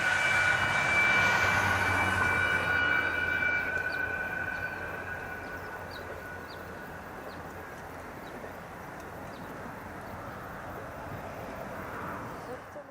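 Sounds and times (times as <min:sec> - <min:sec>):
train horn: 0:00.0 - 0:06.4
train rumbling on rails: 0:00.0 - 0:12.9.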